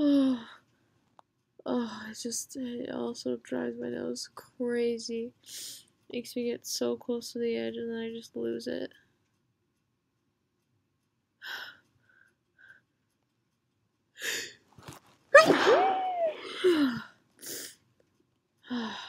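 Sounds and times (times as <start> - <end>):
person sneezing: 15.4 - 17.0
voiced cry: 15.4 - 17.0.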